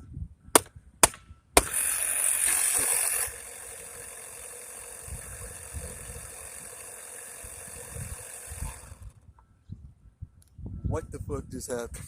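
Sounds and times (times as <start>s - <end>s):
air compressor motor running: 1.6s - 9.2s.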